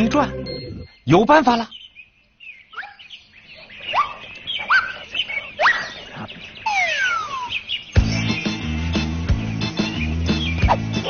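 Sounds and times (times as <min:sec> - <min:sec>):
squeaky cartoon chirps: 0:06.6 - 0:07.7.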